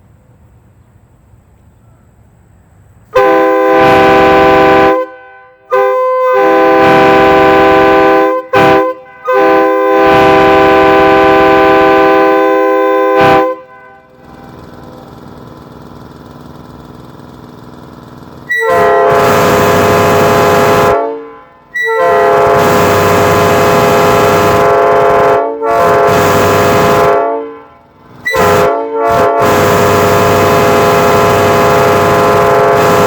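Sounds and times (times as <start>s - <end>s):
locomotive air horn blasts: 3.1s - 14.6s, 18.4s - 33.0s.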